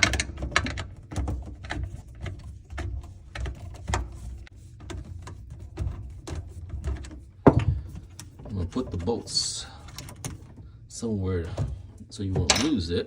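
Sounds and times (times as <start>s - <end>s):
handling knocks: 3.0s - 10.7s, 11.3s - 13.0s.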